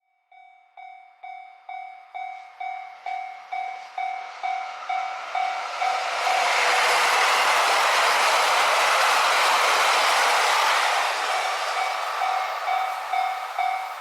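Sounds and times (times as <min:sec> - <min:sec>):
level-crossing warning bell: 0:00.1 - 0:06.4, 0:11.0 - 0:14.0
approaching train rushing: 0:01.3 - 0:14.0.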